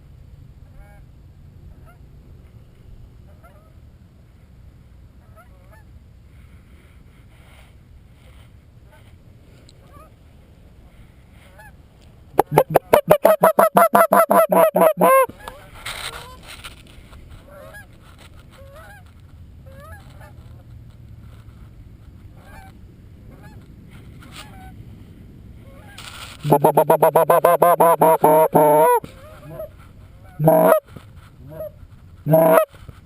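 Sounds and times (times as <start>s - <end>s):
distant geese honking: 12.4s - 15.3s, 26.4s - 29.7s, 30.4s - 30.8s, 32.3s - 32.7s
goose call clucks: 12.4s - 15.6s, 26.4s - 32.9s.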